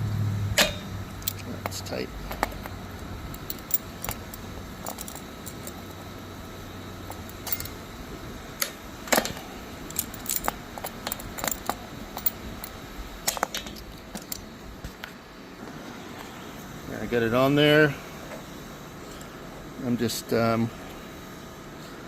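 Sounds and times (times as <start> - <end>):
metal pliers clicking and clinking: 0.6 - 6.0, 7.1 - 7.8, 9.9 - 14.4.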